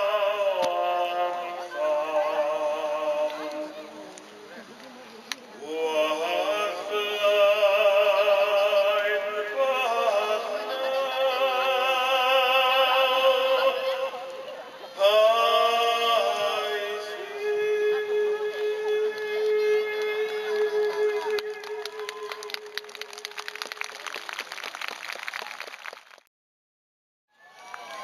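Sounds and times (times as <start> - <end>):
operatic voice singing: 0.0 - 4.2, 5.6 - 22.8.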